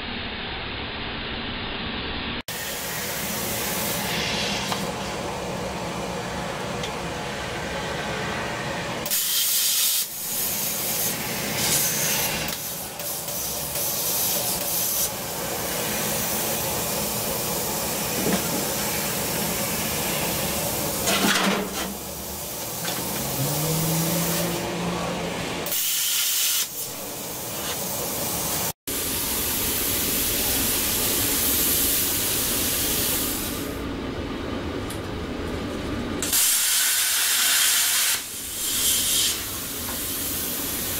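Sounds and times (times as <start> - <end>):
plasma cutter hissing: 2.5 - 5.0, 9.0 - 24.6, 25.6 - 33.8, 36.2 - 40.9.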